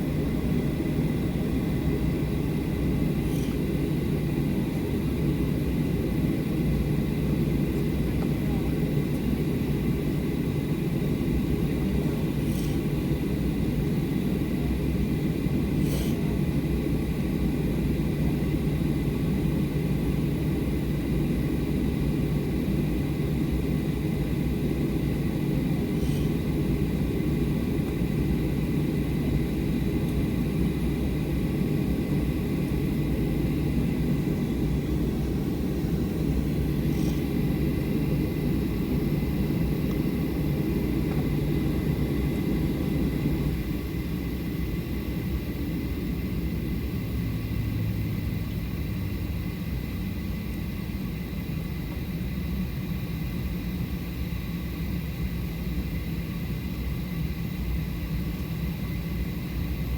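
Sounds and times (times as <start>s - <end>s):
aircraft cabin rumble: 0.0s - 47.4s
faint steady whine: 0.0s - 59.9s.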